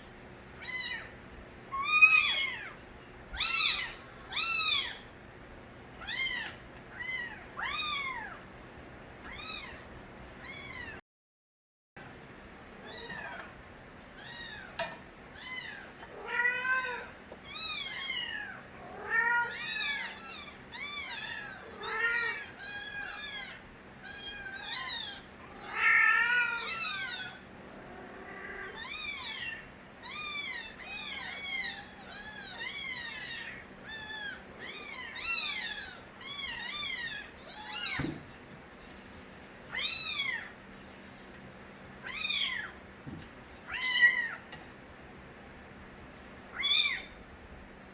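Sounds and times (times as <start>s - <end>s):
kittens meowing: 0.6s - 5.1s, 6.0s - 8.4s, 9.3s - 11.0s, 14.2s - 14.8s, 15.4s - 38.2s, 42.0s - 42.8s, 43.7s - 44.4s, 46.5s - 47.2s.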